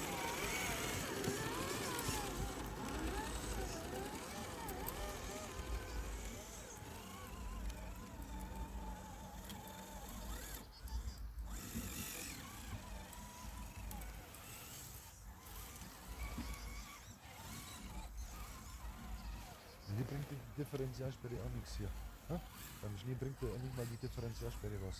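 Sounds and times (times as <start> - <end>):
small electric motor whining: 0.0 - 24.9.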